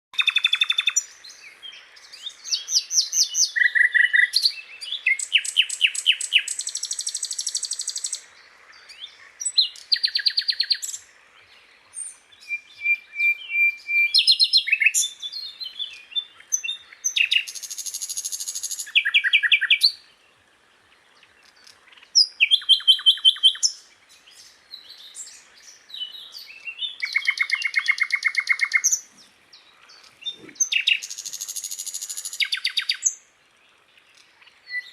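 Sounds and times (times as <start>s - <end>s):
flycatcher singing: 0.2s - 8.2s, 21.3s - 33.2s.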